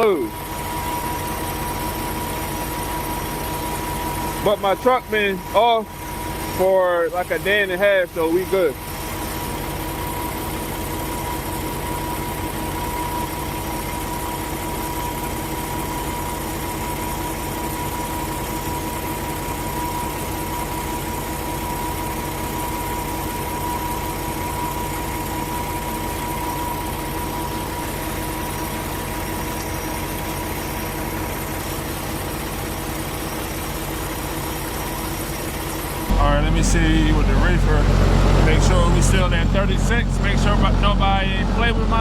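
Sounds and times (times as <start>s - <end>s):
constant high tone: 0.0s - 42.0s
engine idling: 0.0s - 42.0s.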